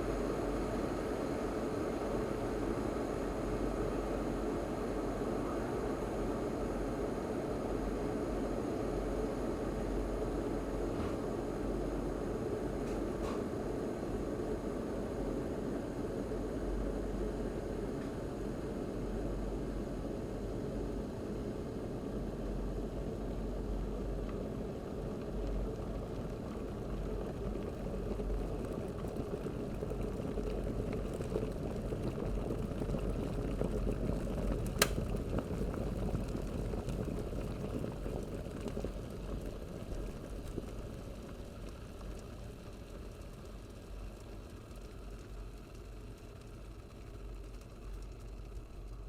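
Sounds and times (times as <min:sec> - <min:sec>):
kettle boiling: 0:00.0 - 0:49.0
kettle switch click: 0:34.8 - 0:35.0.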